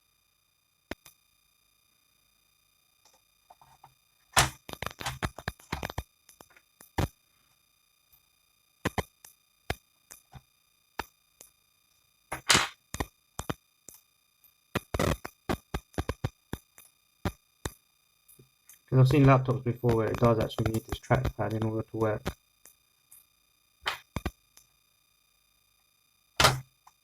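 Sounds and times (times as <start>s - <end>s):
hands tapping laptop case: 26.4s - 26.6s.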